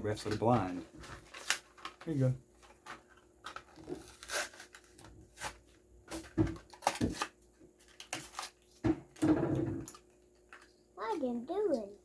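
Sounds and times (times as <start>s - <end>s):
plastic packaging tearing and crinkling: 0.1s - 8.8s.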